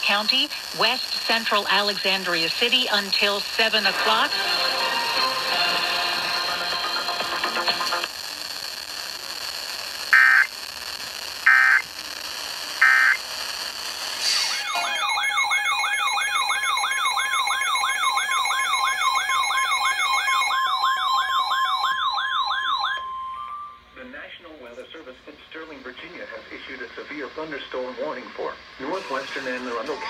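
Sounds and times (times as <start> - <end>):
digital data tones: 11.5 - 11.8, 12.8 - 13.2, 14.2 - 22.0
siren-like alert tone wailing: 12.8 - 13.2, 14.3 - 23.9.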